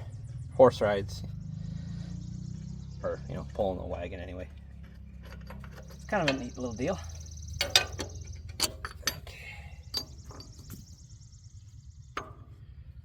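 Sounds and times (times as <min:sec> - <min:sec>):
low hum: 0:00.0 - 0:13.0
hand tools knocking on metal: 0:07.6 - 0:09.3.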